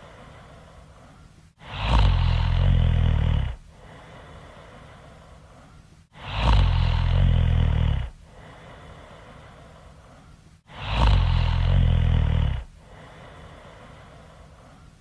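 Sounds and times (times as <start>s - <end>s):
breathy exhale: 0.0s - 15.0s
loud deep snoring: 1.6s - 4.7s, 6.1s - 9.7s, 10.7s - 14.5s.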